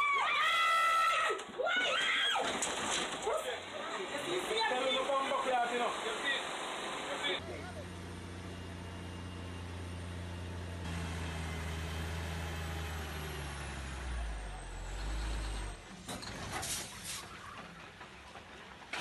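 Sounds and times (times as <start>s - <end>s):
heavy vehicle engine running: 5.1s - 19.0s.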